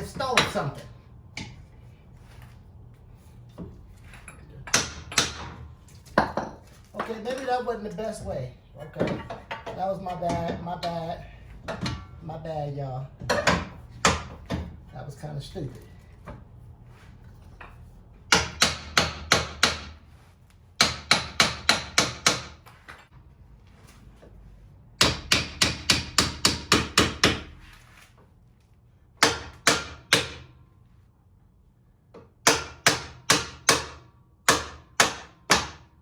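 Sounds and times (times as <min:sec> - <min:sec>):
hammer striking metal: 0:04.7 - 0:05.6, 0:18.3 - 0:20.0, 0:25.0 - 0:27.4, 0:29.2 - 0:30.5, 0:32.4 - 0:35.9.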